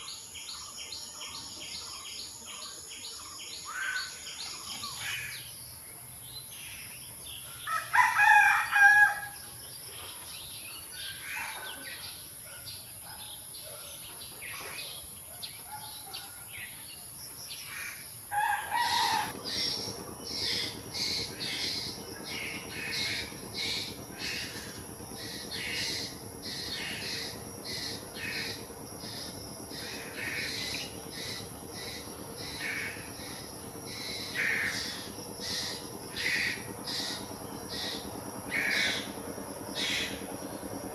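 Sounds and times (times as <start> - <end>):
background birdsong: 0.0 - 40.9
steady low hum: 0.0 - 40.9
rooster crowing: 7.7 - 9.4, 18.3 - 19.4.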